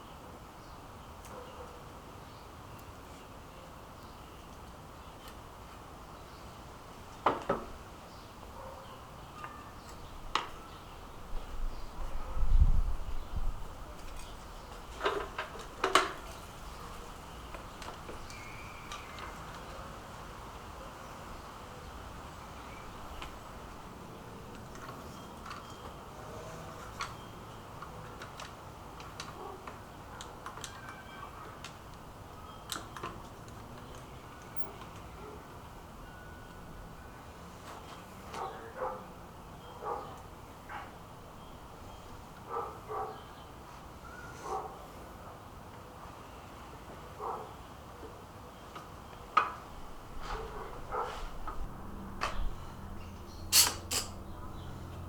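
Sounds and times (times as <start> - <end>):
tools and wood clicking: 53.5 - 54.2.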